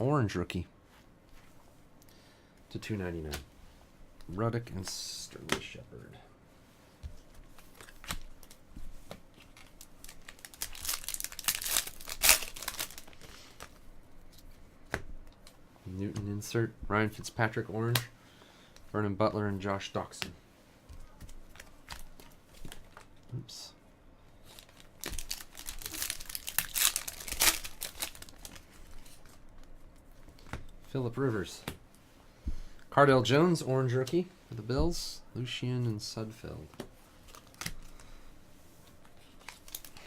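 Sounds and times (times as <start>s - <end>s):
wrapper ripping: 9.4s - 13.7s, 24.5s - 29.3s, 39.4s - 40.0s
plastic wrapper crinkling: 9.4s - 13.8s, 24.4s - 29.7s, 39.2s - 40.0s.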